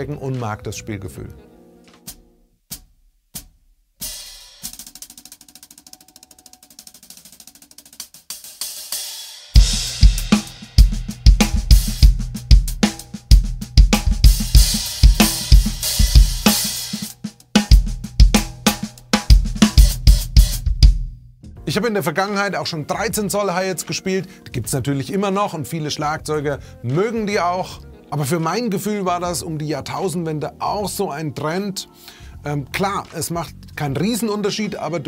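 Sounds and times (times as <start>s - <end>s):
drum kit groove: 1.9s - 21.3s, 32.8s - 33.4s
hi-hat strokes: 3.4s - 20.7s.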